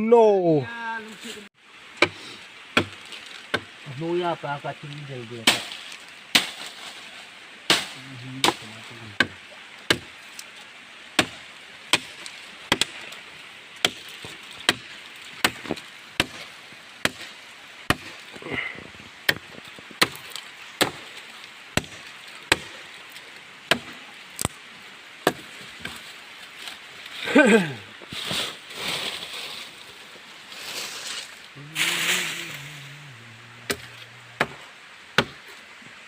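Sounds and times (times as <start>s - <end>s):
axe chopping wood: 2.8s - 3.7s, 5.4s - 6.7s, 7.7s - 10.1s, 11.2s - 13.0s, 13.8s - 18.2s, 19.3s - 21.1s, 21.8s - 22.8s, 23.7s - 24.6s, 25.2s - 26.0s, 33.7s - 34.6s, 35.2s - 35.4s.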